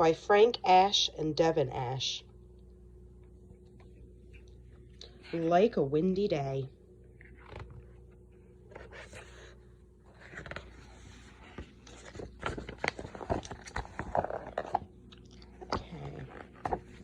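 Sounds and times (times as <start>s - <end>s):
book pages turning: 7.1s - 17.0s
paper rustling: 7.1s - 17.0s.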